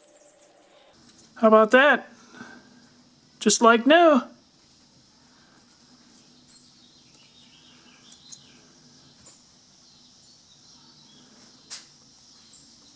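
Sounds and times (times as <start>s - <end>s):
high insect-like hiss: 0.0s - 12.9s
birds chirping: 6.0s - 12.9s.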